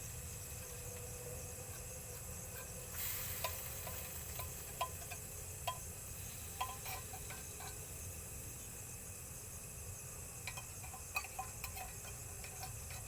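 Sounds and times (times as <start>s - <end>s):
fish sizzling: 2.1s - 8.8s, 10.3s - 13.0s
metal spoon clinking on pan: 3.2s - 5.9s, 6.5s - 7.9s, 10.4s - 13.0s.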